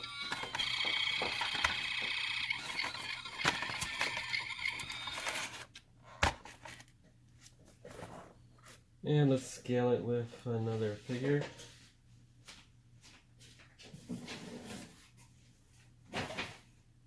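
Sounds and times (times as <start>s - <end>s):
toy siren warbling tone: 0.0s - 5.4s.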